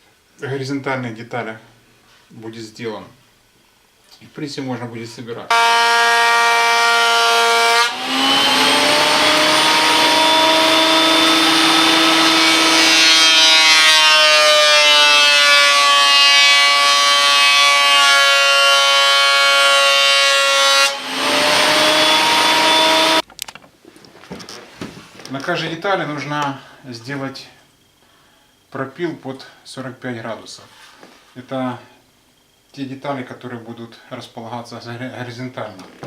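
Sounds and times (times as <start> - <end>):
woodworking machine motor whine: 5.5 - 23.2.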